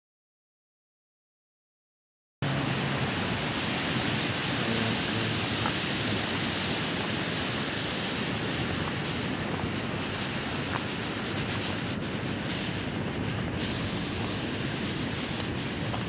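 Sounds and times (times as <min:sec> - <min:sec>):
river rushing: 0:02.4 - 0:13.0.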